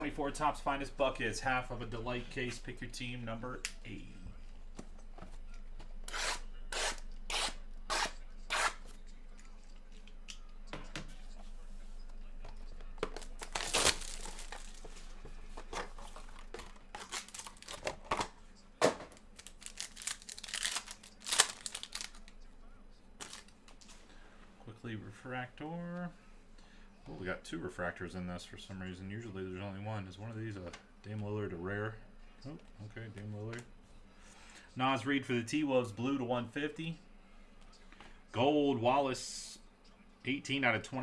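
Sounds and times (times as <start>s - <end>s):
card packaging tearing and crinkling: 13.0s - 22.4s, 23.2s - 23.6s.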